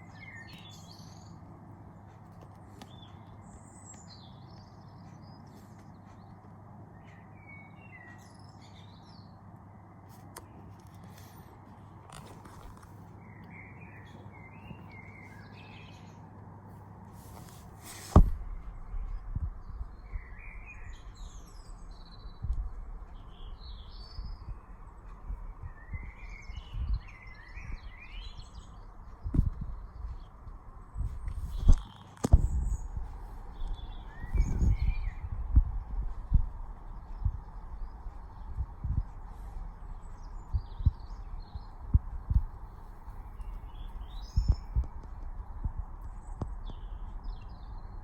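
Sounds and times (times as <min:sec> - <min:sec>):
small birds chirping: 0:00.0 - 0:48.0
steady background hum: 0:00.0 - 0:48.0
sharp thump: 0:17.9 - 0:18.5, 0:31.5 - 0:32.8
wind gusting on microphone: 0:18.0 - 0:48.0.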